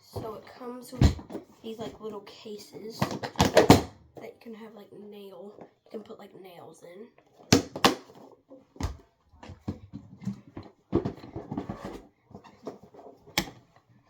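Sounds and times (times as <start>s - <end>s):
plastic cases clicking and knocking: 3.0s - 4.0s, 7.4s - 13.8s
plastic rattling and rubbing: 7.2s - 14.0s.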